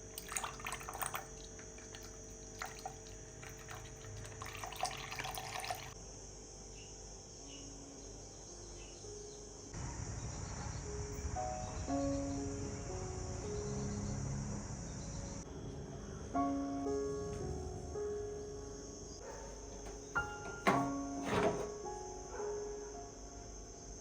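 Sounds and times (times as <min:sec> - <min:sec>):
water splashing in a sink: 0:00.0 - 0:06.0
soft slow music: 0:06.0 - 0:09.8, 0:10.7 - 0:24.0.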